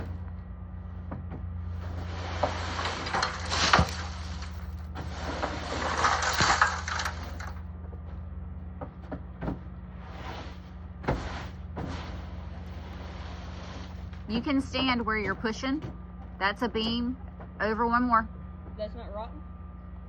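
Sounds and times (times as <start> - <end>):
scraping on a roof: 1.2 - 7.6, 8.8 - 16.0
knocks and thuds: 8.7 - 9.8.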